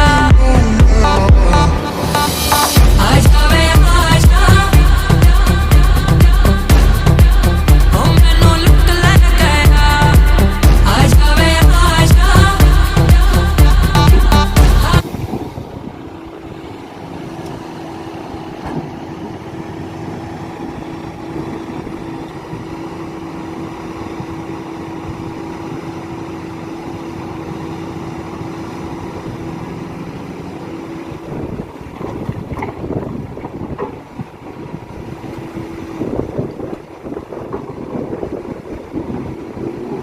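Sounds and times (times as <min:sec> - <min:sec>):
background music: 0:00.0 - 0:15.0
heavy diesel machinery hum: 0:00.0 - 0:40.0.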